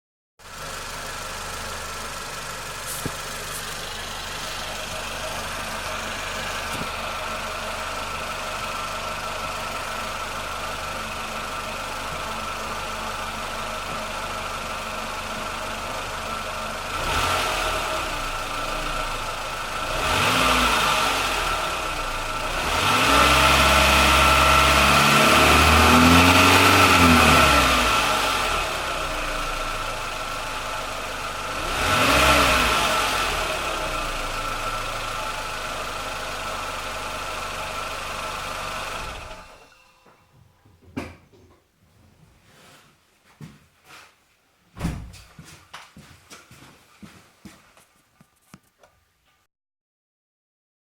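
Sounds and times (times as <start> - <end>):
car engine idling and revving: 0.4 - 39.9.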